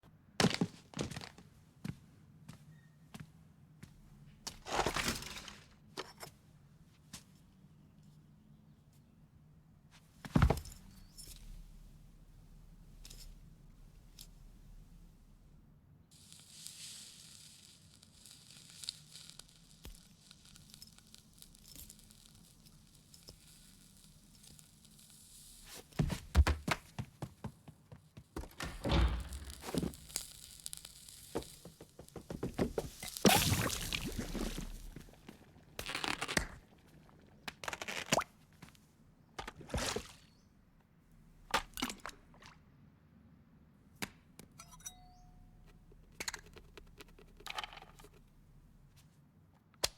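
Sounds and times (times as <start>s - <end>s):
small clicks and ticks: 16.7s - 25.2s
crackling and rustling: 16.7s - 38.9s.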